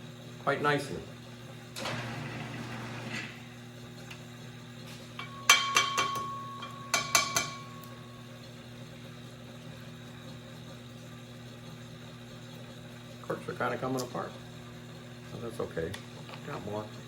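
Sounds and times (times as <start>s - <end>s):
lathe humming: 0.8s - 5.6s
sharp ringing taps on glass: 5.2s - 7.9s.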